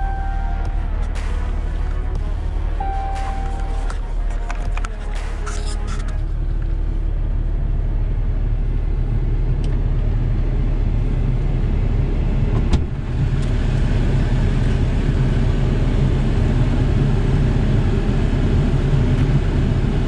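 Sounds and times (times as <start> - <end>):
diesel engine idling: 0.0 - 5.2.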